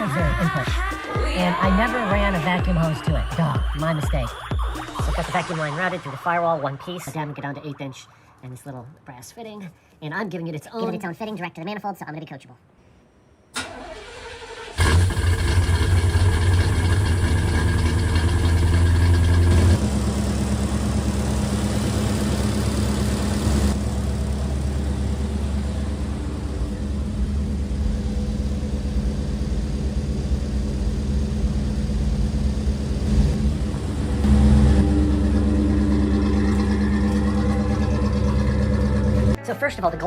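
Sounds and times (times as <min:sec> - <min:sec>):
car engine idling: 0:13.6 - 0:39.4.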